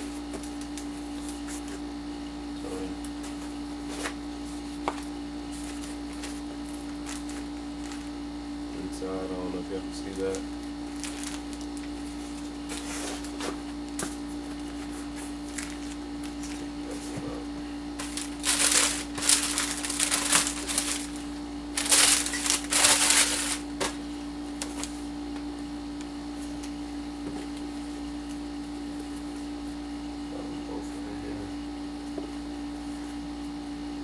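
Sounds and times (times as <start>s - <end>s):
electrical hum: 0.0s - 34.0s
paper rustling and crinkling: 3.0s - 8.1s, 10.2s - 17.2s, 18.0s - 25.1s.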